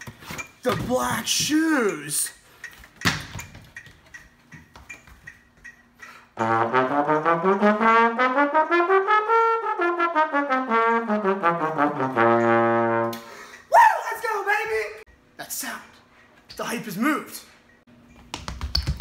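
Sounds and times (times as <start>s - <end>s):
low brass instrument playing scale: 6.4s - 13.3s.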